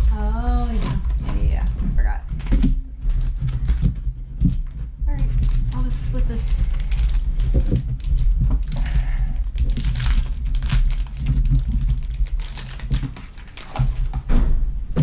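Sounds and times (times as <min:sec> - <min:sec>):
foil packs crinkling and rustling: 0:00.0 - 0:14.3
low hum: 0:00.0 - 0:15.0.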